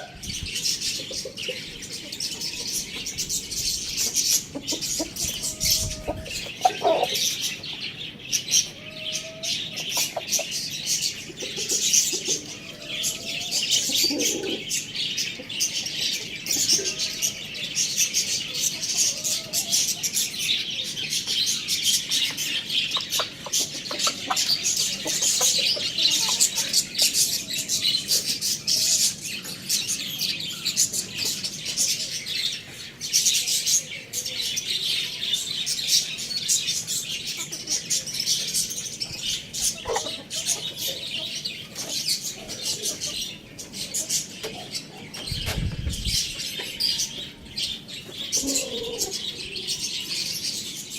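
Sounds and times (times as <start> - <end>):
many small birds chirping: 0.0 - 50.9.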